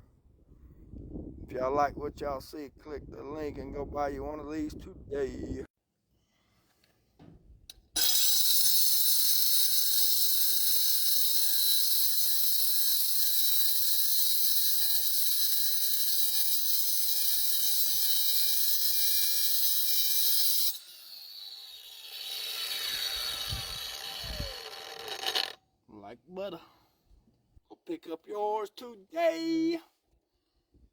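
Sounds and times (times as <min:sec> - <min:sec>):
grinder cutting metal: 0:08.0 - 0:25.6.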